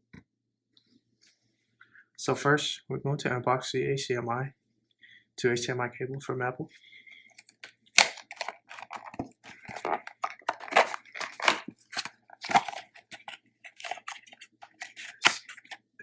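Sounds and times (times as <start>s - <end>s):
packaging crinkling: 7.4s - 15.8s.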